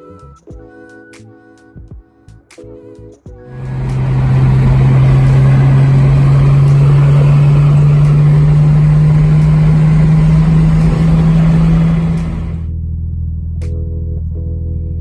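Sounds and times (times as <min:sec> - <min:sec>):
car engine accelerating: 0:03.5 - 0:12.7.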